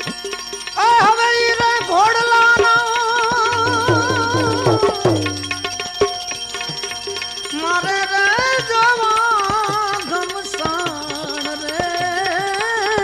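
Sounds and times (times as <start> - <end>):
tabla strokes: 0.0 - 13.0
ornamented wavering melody: 3.5 - 6.1.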